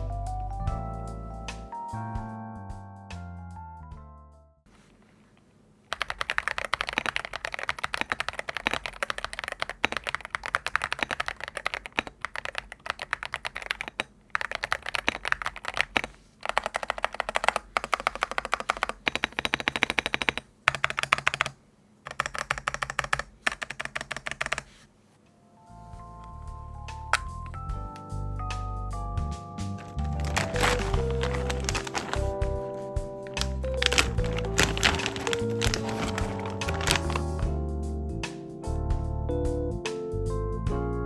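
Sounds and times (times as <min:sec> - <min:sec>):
typing on mechanical keyboard: 0:05.9 - 0:24.7, 0:29.8 - 0:37.5.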